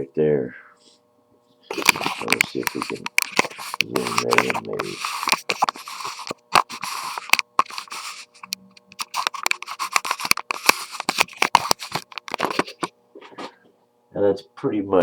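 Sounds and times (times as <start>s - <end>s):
faint steady hum: 0.0s - 15.0s
camera handling clicks and taps: 5.2s - 12.9s.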